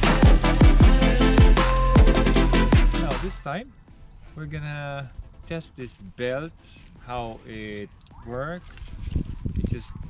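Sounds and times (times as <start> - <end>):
deep bass drum hits: 0.0 - 3.3
electronic music: 0.0 - 3.6.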